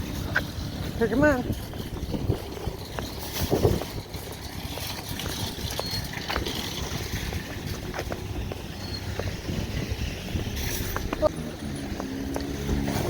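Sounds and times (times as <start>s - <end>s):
outdoor background noise: 0.0s - 13.0s
footsteps on pavement: 4.6s - 13.0s.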